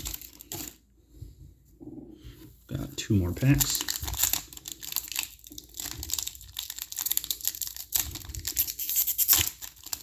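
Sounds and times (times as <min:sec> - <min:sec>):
foil wrapper crinkling: 0:00.0 - 0:00.8, 0:03.4 - 0:10.0.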